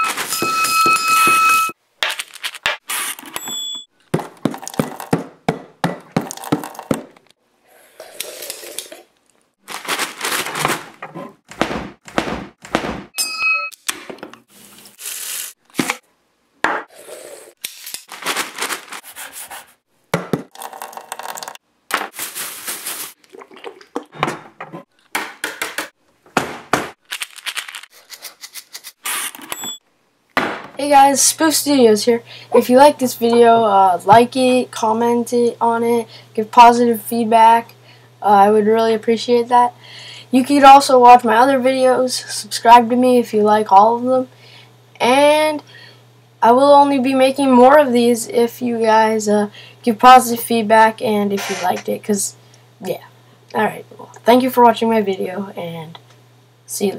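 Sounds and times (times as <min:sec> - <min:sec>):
kitchen thunks and clatters: 0:24.0 - 0:27.0.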